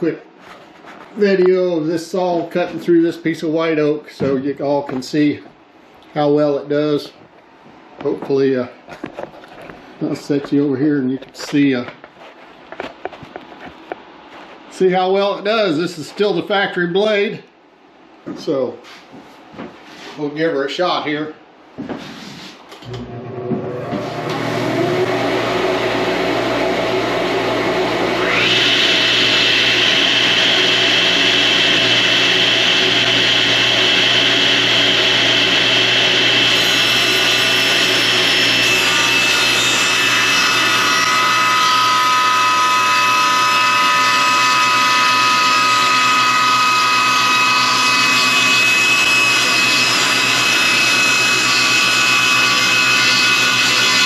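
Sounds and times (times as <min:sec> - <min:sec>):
table saw ripping wood: 0:22.9 - 0:54.0.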